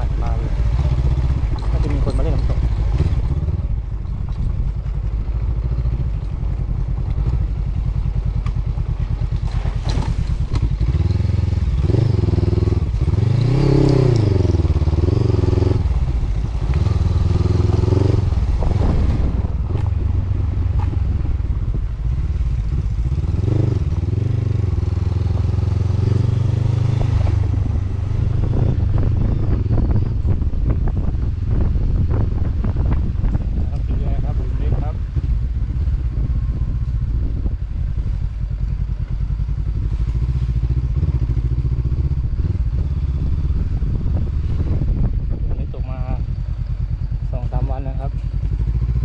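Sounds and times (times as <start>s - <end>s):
motorcycle engine revving: 0.0s - 49.0s
clatter: 1.3s - 7.6s.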